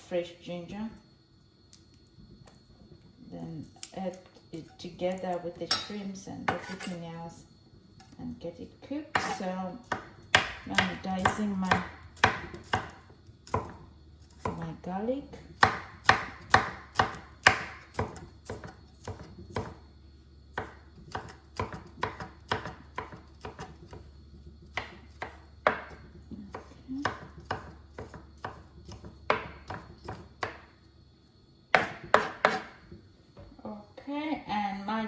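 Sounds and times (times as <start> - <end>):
knife chopping on cutting board: 9.2 - 13.8, 15.6 - 19.8, 20.6 - 24.0, 24.7 - 30.7, 31.7 - 32.8.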